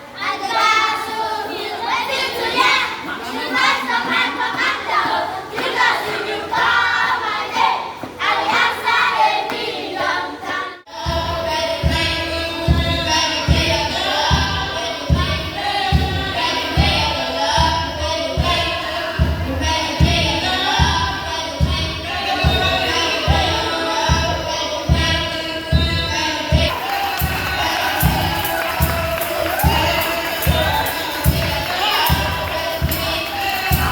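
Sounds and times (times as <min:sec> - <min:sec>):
choir singing with band: 0:00.2 - 0:33.9
group singing: 0:00.2 - 0:33.9
kick drum beat: 0:11.1 - 0:33.9.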